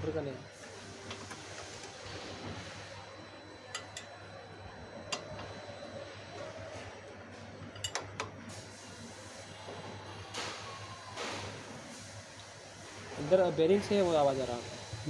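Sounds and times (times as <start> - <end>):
steady low hum: 0.0 - 9.4.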